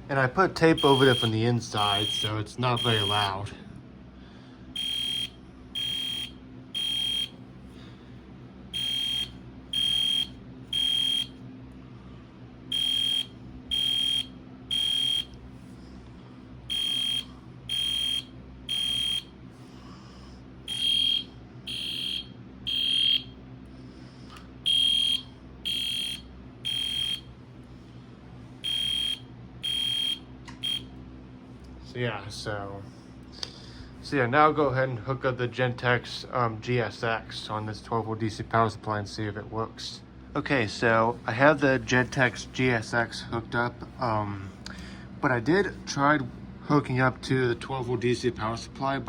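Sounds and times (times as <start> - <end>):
fire alarm horn beeping: 0.6 - 3.4, 4.8 - 7.4, 8.7 - 11.4, 12.7 - 15.4, 16.7 - 19.4, 20.7 - 23.4, 24.6 - 27.3, 28.6 - 31.0.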